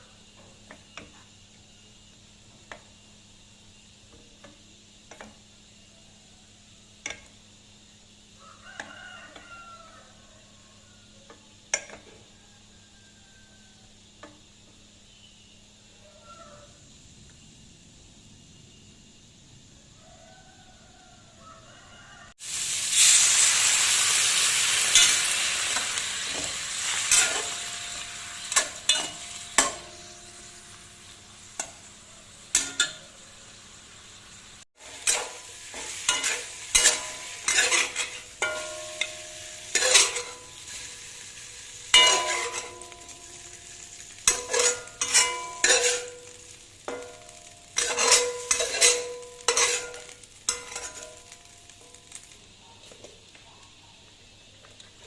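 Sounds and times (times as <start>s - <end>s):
food sizzling in hot oil: 0.0s - 17.1s, 22.1s - 53.4s
metal spatula scraping pan: 24.8s - 30.3s, 34.8s - 40.9s, 41.9s - 43.1s, 44.1s - 51.4s.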